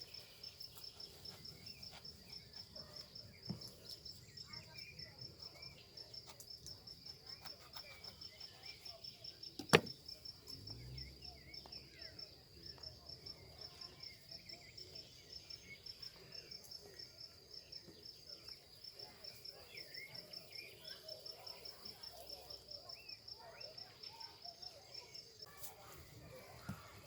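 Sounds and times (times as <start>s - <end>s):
cricket chirping: 0.0s - 25.5s
sharp click: 9.6s - 10.0s.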